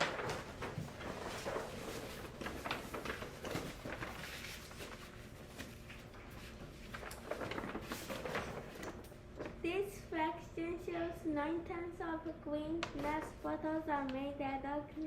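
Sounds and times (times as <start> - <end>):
rustling handling noises: 0.0 - 9.6.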